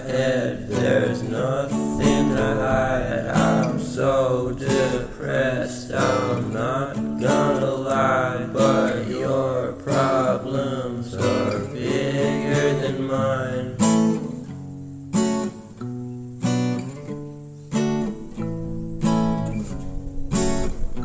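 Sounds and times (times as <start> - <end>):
person singing: 0.0 - 14.4
acoustic guitar strumming: 0.0 - 21.0.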